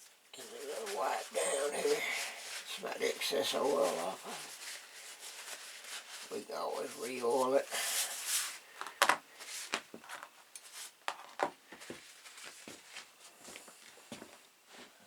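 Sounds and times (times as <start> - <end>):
cloth wiping over knife: 0.4 - 8.7.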